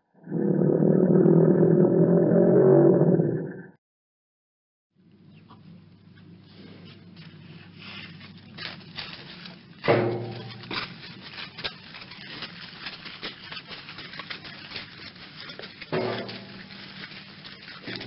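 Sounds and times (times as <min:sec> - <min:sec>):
steady low hum: 0:05.0 - 0:18.0
clicking and rustling: 0:08.1 - 0:18.0.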